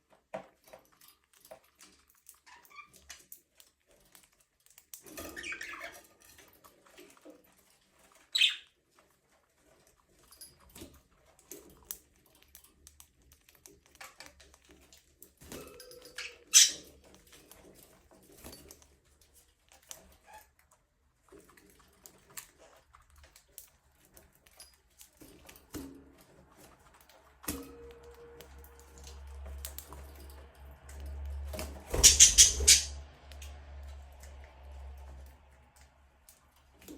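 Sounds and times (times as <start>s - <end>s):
budgerigars chirping: 8.4s - 8.7s, 16.5s - 16.9s, 31.9s - 33.0s.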